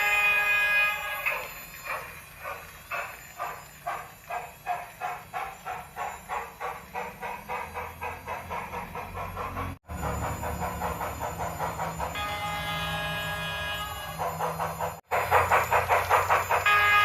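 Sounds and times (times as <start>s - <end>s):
steam whistle: 0.0s - 4.1s, 11.6s - 17.0s
steam locomotive chuffs: 0.0s - 17.0s.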